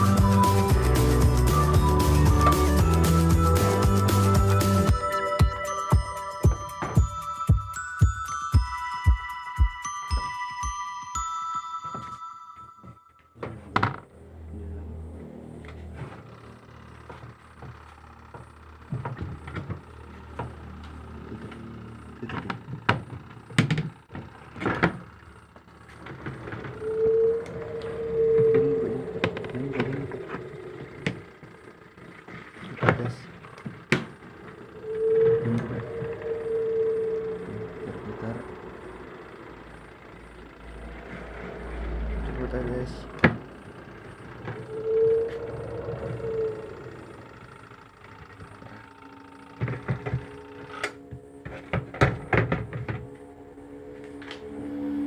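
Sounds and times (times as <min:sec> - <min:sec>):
steady hum: 0:13.4 - 0:55.0.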